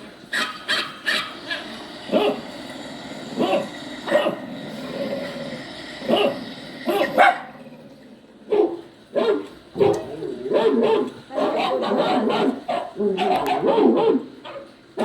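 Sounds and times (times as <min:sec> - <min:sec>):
puppy yelping barks: 0:00.3 - 0:01.6, 0:06.9 - 0:07.5, 0:08.5 - 0:14.7.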